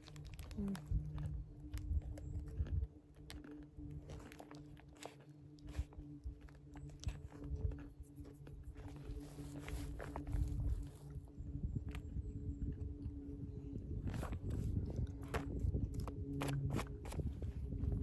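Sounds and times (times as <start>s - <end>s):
person chewing crunchy snack: 0.0s - 11.2s.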